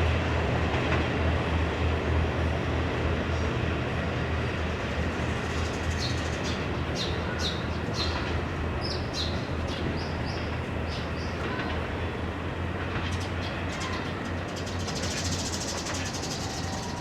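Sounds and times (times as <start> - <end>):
diesel train engine rumble: 0.0 - 17.0.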